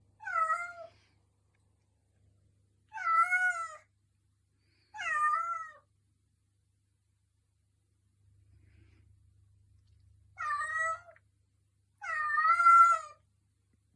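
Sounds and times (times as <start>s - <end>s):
cat meowing: 0.2s - 0.9s, 2.9s - 3.9s, 5.0s - 5.8s, 10.4s - 11.2s, 12.0s - 13.2s.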